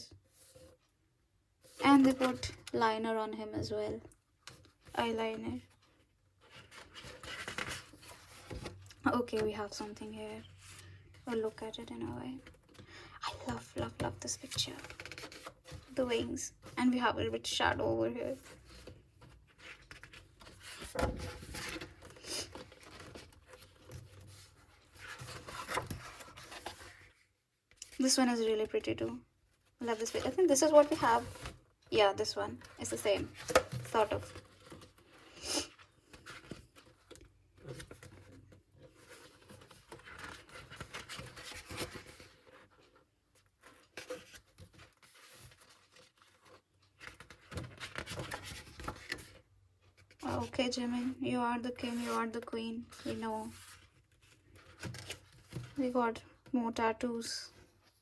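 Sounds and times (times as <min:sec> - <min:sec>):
paper pages rustling: 0:06.4 - 0:09.8, 0:18.4 - 0:28.1, 0:32.2 - 0:49.4.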